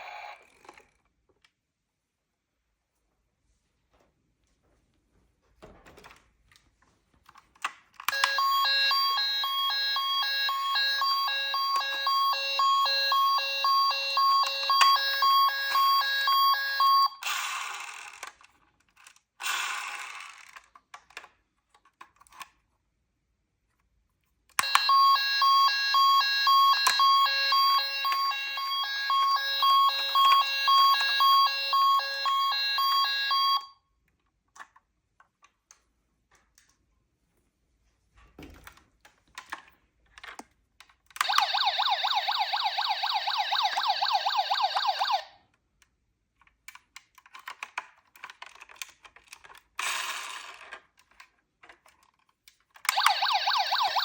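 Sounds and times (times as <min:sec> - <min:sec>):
toy siren beeping: 0:08.1 - 0:17.3, 0:24.6 - 0:33.7, 0:41.2 - 0:45.3, 0:52.9 - 0:54.0.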